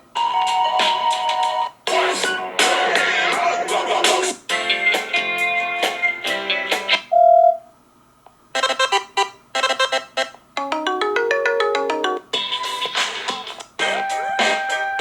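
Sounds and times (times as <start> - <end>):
phone ringtone melodies: 7.1 - 7.6, 8.6 - 13.0.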